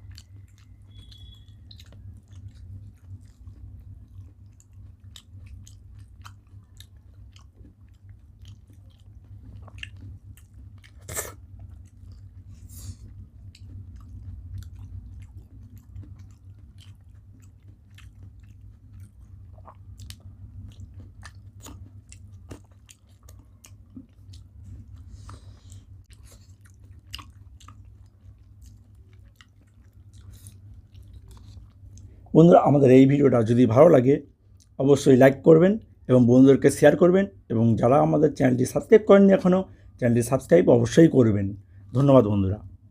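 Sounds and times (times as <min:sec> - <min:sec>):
close-up chewing: 0:00.0 - 0:33.5
steady low hum: 0:00.0 - 0:42.9.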